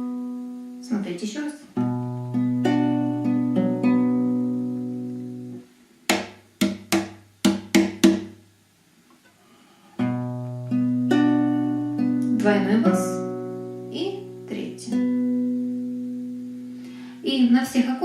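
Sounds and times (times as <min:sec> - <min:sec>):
guitar fingerpicking: 0:01.8 - 0:08.4, 0:10.0 - 0:16.9
guitar strumming: 0:01.8 - 0:08.5, 0:10.0 - 0:17.2.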